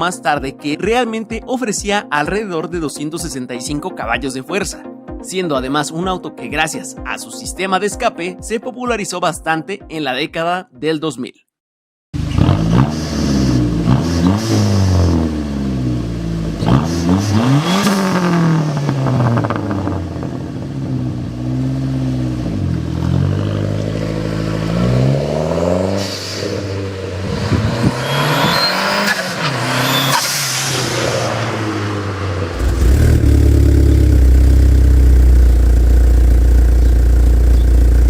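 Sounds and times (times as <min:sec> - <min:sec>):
car engine revving: 0:12.2 - 0:38.0
thin high whistle: 0:28.0 - 0:29.2.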